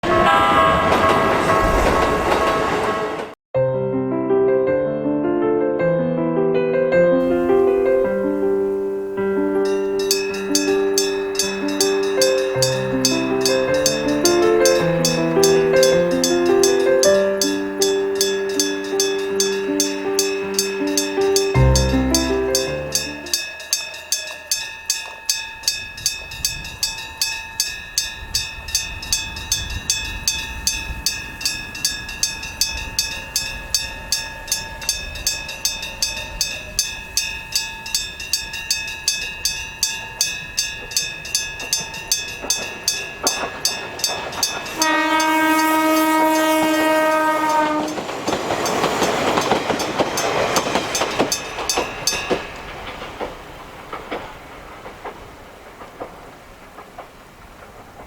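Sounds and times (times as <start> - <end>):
train horn blast: 0.0 - 1.7, 44.8 - 48.2
train passing rumble: 7.2 - 58.0
level-crossing bell ringing: 9.6 - 53.6.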